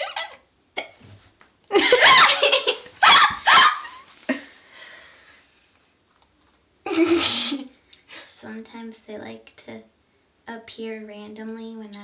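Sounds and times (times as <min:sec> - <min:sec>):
person laughing with hiccups: 0:01.7 - 0:04.4, 0:06.9 - 0:07.6.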